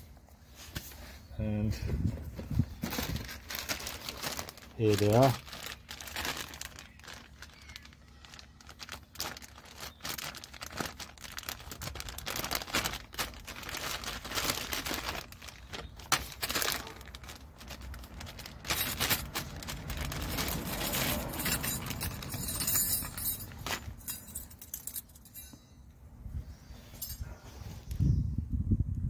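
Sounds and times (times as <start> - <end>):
packaging crinkling and tearing: 2.8 - 24.0.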